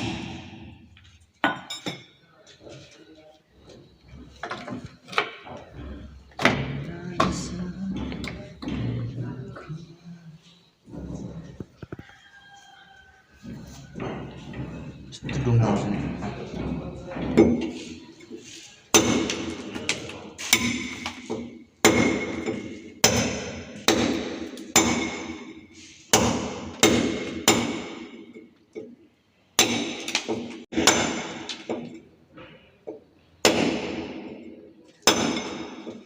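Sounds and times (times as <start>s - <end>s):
hammer on metal: 18.9s - 19.7s, 21.8s - 28.2s, 29.6s - 31.9s, 35.0s - 36.0s.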